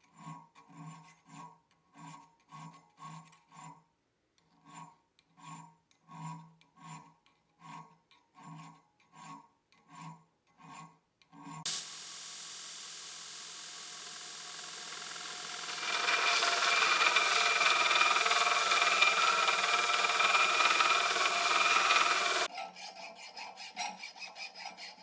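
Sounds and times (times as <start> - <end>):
hand file rasping on steel: 4.6 - 11.6, 15.6 - 25.0.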